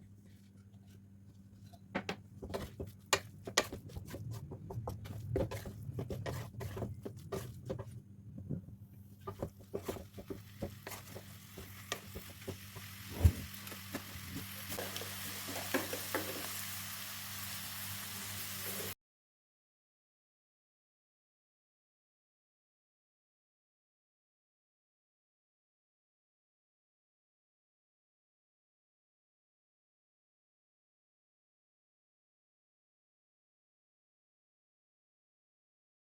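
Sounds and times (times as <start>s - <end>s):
food sizzling in hot oil: 10.5s - 19.0s.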